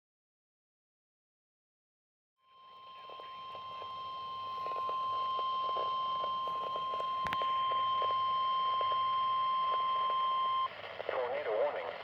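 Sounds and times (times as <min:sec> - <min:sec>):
long steady electronic tone: 0:02.4 - 0:11.1
click: 0:07.2 - 0:07.4.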